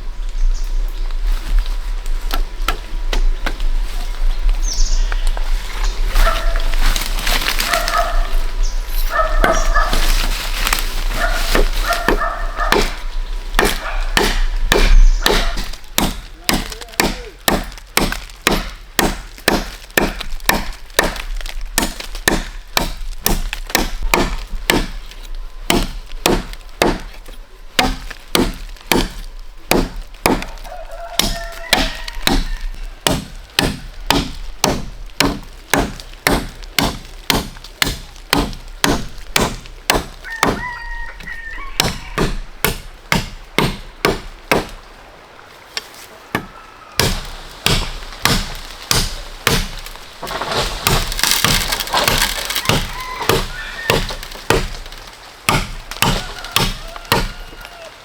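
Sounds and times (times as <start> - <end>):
blade chopping bamboo: 11.4 - 40.8, 41.8 - 44.8, 46.4 - 57.4.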